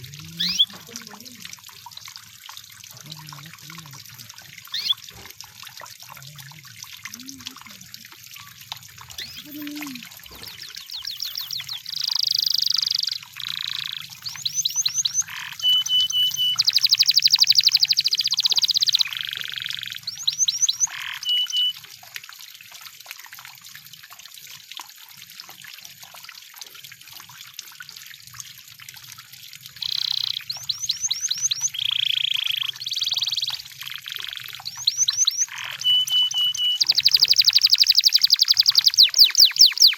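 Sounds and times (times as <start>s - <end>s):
canary singing trills: 0.0s - 1.4s, 4.7s - 5.1s, 9.1s - 21.8s, 29.8s - 39.9s.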